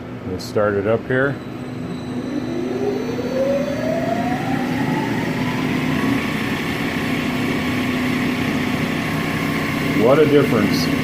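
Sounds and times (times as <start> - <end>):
lathe spindle whine: 1.0 - 11.0
low hum: 1.4 - 9.2.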